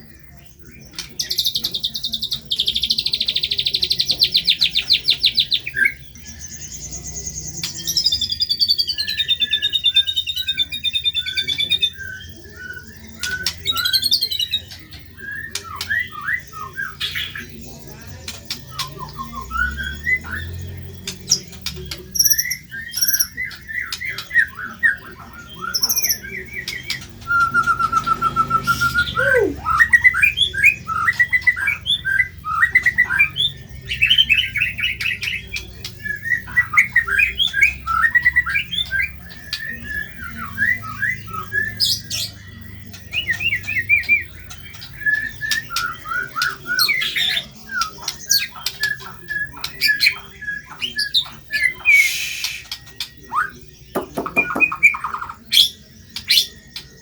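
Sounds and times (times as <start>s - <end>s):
bird singing varied song: 0.0s - 57.0s
long falling bird whistle: 51.9s - 52.8s.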